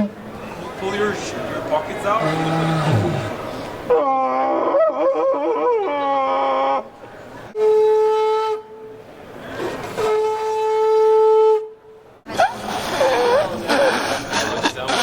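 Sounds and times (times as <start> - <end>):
tube blown like a horn: 7.6 - 14.2.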